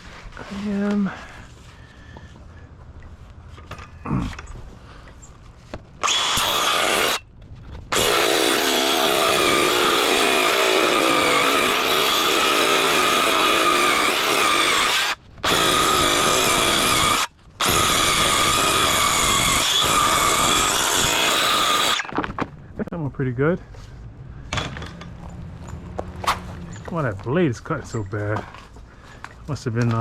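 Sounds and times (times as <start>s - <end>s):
electric saw cutting wood: 6.0s - 7.2s, 7.9s - 22.1s.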